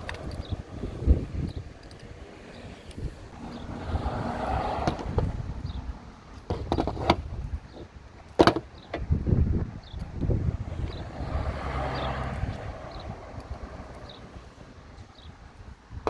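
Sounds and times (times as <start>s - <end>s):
low rumble: 2.6s - 6.3s.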